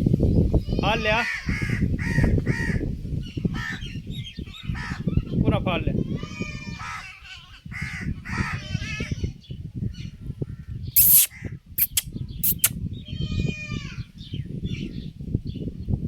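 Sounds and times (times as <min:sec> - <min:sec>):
harsh animal calls: 0:11.0 - 0:12.7.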